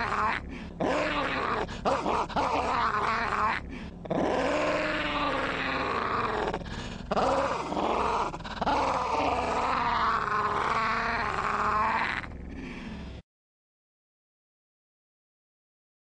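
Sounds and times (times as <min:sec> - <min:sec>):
man imitating dog growl: 0:00.0 - 0:12.4.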